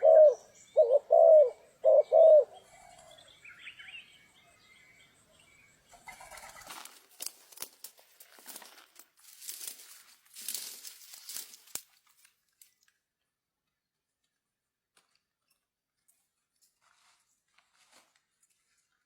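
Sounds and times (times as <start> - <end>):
rustling and crackling: 6.5 - 13.0.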